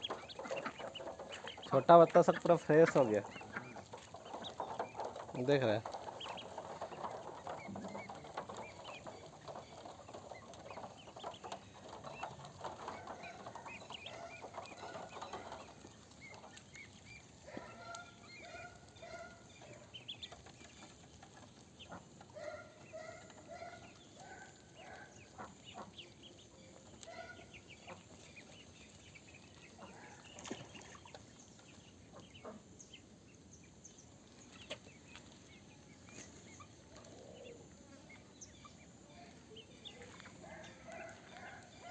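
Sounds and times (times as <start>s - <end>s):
ducks quacking: 0.0s - 31.2s, 32.0s - 32.8s
ducklings peeping: 0.0s - 41.9s.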